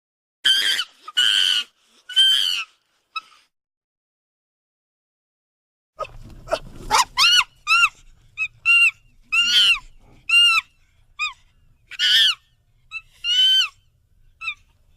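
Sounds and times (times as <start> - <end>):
monkey high-pitched calls: 0.4 - 3.4, 6.5 - 13.8, 14.4 - 14.9.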